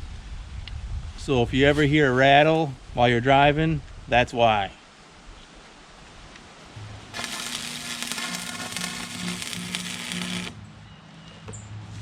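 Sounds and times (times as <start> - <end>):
welding arc crackle and sizzle: 7.1 - 10.6.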